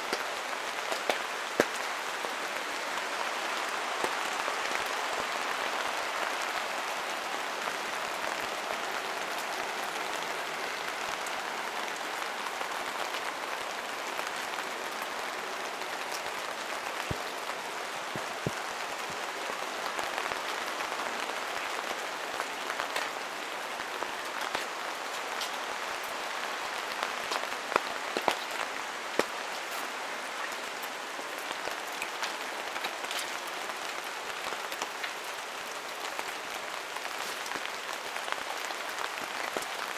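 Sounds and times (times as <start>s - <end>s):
water drips landing close by: 0.0s - 2.1s, 17.0s - 19.2s, 24.3s - 33.6s
rain pattering in forest: 0.0s - 39.9s.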